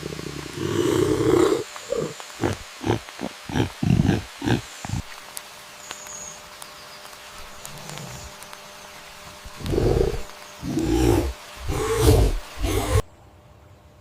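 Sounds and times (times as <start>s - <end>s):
animal low calls and grunts: 0.0s - 5.2s, 9.4s - 13.0s.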